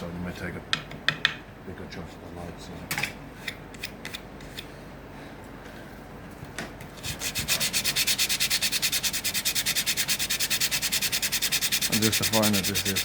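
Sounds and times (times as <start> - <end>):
hand sanding wood: 7.0 - 13.0.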